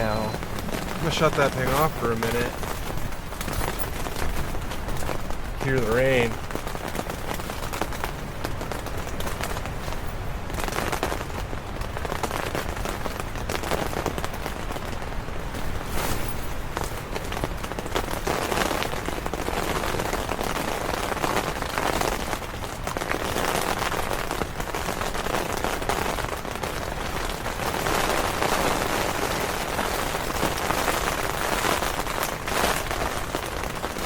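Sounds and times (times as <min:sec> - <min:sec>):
rain on tent fabric: 0:00.0 - 0:34.0.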